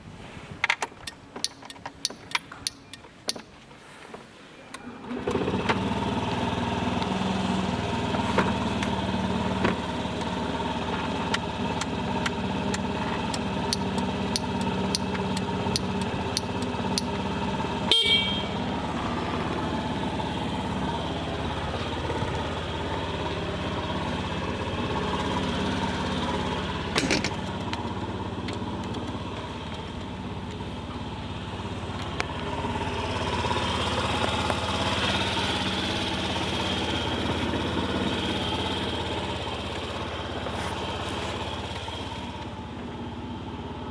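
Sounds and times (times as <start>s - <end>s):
sharp clicks: 0.7s - 3.5s, 11.3s - 17.2s
scooter engine idling: 4.8s - 43.9s.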